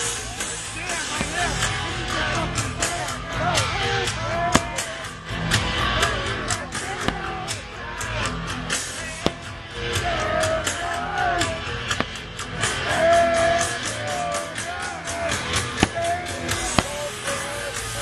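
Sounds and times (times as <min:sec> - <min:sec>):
pop music with singing: 0:00.0 - 0:18.0
fireworks bangs: 0:04.5 - 0:04.9, 0:09.1 - 0:09.6, 0:11.9 - 0:12.3, 0:15.8 - 0:17.2.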